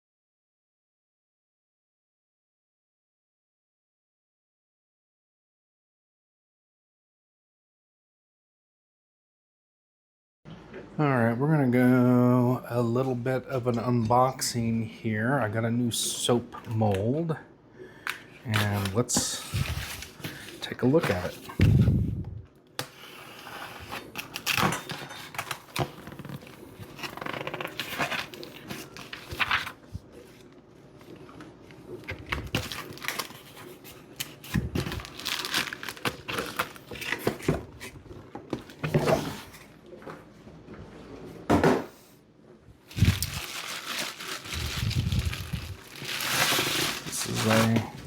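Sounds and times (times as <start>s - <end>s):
packaging crinkling and rustling: 18.5s - 21.9s, 23.6s - 39.7s, 42.8s - 48.0s.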